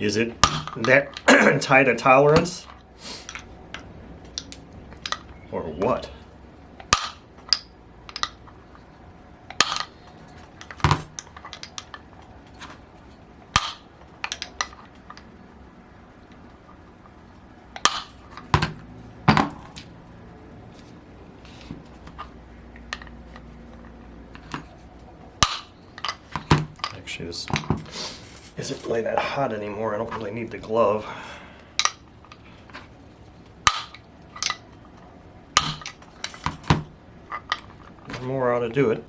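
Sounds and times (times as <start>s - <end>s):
metal tools clinking on workbench: 19.3s - 20.0s.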